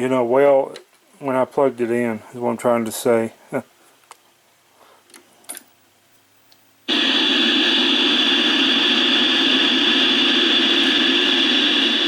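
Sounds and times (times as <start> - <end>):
tv static hiss: 6.8 - 12.0.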